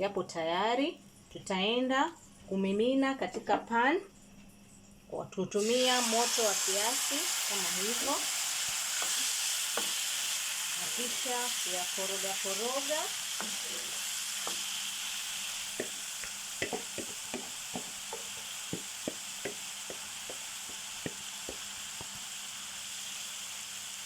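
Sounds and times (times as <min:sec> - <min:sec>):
liver sizzling in a pan: 0:05.6 - 0:24.0
utensil tapping against pan: 0:09.0 - 0:10.0, 0:14.4 - 0:14.7, 0:15.7 - 0:22.1.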